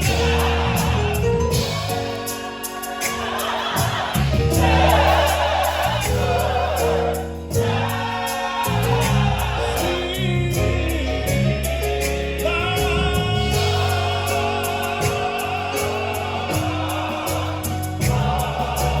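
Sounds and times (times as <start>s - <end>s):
band with bass and drums: 0.0s - 8.2s
choir singing: 0.0s - 19.0s.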